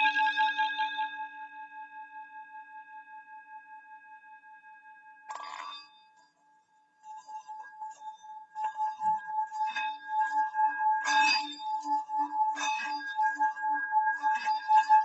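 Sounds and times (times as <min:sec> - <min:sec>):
singing bowl ringing: 0:05.3 - 0:05.9
singing bowl rim rubbed: 0:05.3 - 0:06.0.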